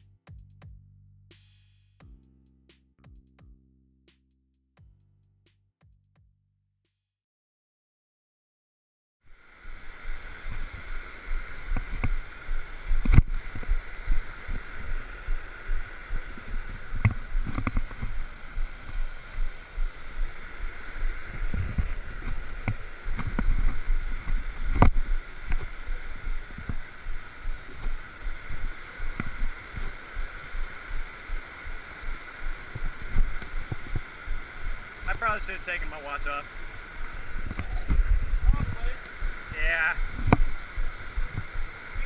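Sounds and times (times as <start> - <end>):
falling water rushing: 27.2 - 42.0.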